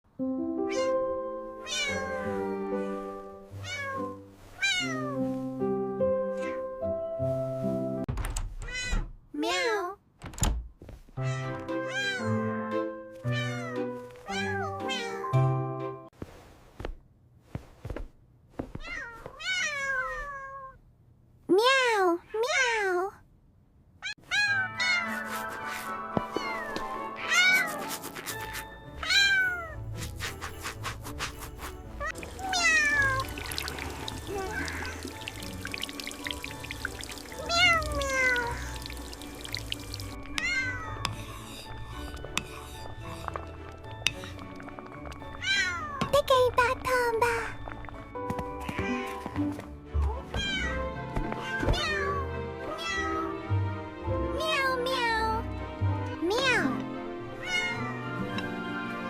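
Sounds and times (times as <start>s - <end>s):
soft background music: 0.1s - 8.1s, 11.2s - 16.2s, 24.3s - 59.0s
cartoon kitten meowing: 0.7s - 2.8s, 3.6s - 5.2s, 6.3s - 6.7s, 8.7s - 10.0s, 11.2s - 12.4s, 24.0s - 25.2s, 32.0s - 33.3s, 34.3s - 35.0s, 37.3s - 38.7s, 40.4s - 41.0s, 45.4s - 46.2s, 51.4s - 53.4s, 57.4s - 58.0s
kitten meowing: 1.6s - 2.6s, 32.0s - 33.3s, 37.3s - 38.7s, 40.3s - 41.0s, 45.4s - 46.1s, 57.4s - 58.0s.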